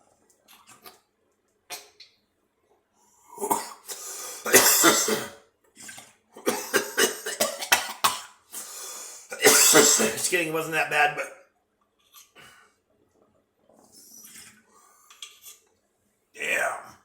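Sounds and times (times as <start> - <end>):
person coughing harshly: 3.4 - 5.4, 6.4 - 8.7, 9.3 - 10.4.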